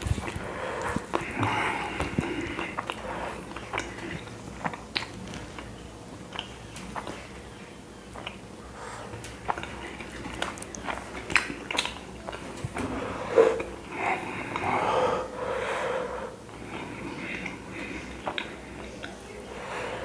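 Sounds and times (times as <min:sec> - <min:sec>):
loud wheezing breathing: 0:12.9 - 0:17.0.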